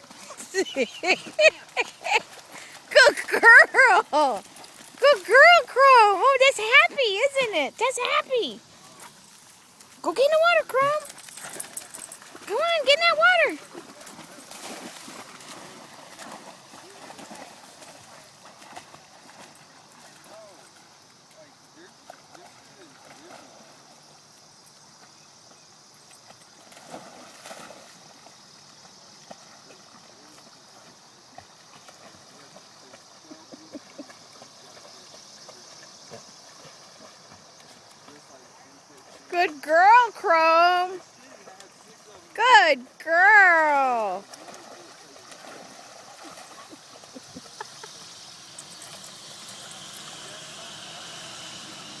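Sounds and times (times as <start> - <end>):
dog paddling in water: 0.0 - 52.0
steady outdoor hiss: 0.0 - 52.0
steady high hiss: 46.0 - 52.0.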